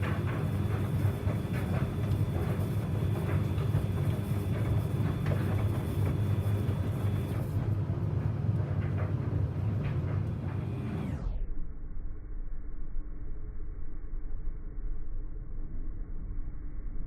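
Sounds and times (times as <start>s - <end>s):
washing machine drum humming: 0.0s - 11.1s.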